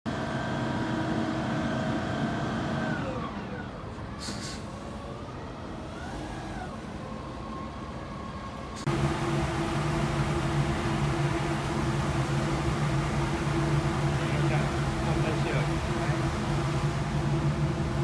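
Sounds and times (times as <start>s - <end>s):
vehicle whine: 0.1s - 18.0s
short hiss: 4.2s - 4.7s.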